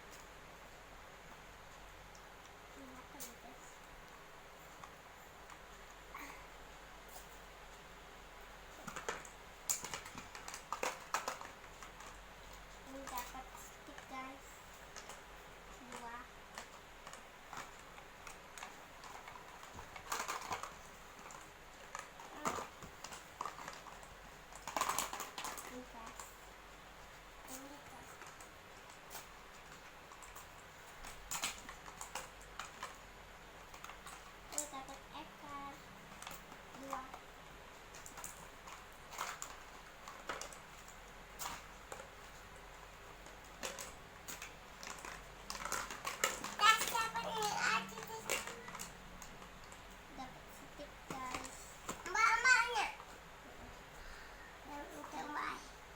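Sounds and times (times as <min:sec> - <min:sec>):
taps clicks and rustles: 0:08.6 - 0:33.0, 0:33.6 - 0:53.3.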